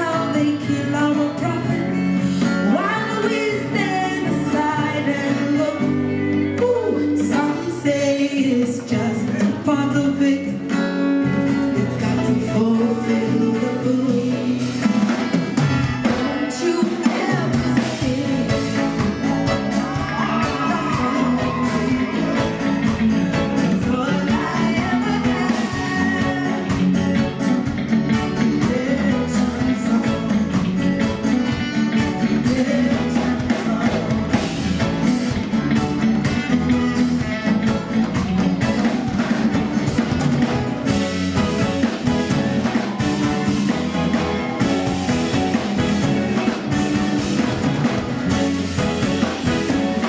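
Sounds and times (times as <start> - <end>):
woman singing: 0.0 - 15.0, 16.0 - 35.4
live band playing: 0.0 - 50.0.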